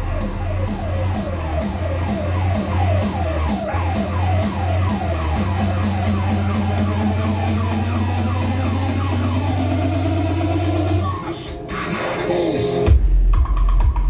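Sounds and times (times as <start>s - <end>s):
siren-like falling synth: 0.0s - 11.4s
heavy bass: 0.0s - 14.0s
loud electronic music: 0.0s - 14.0s.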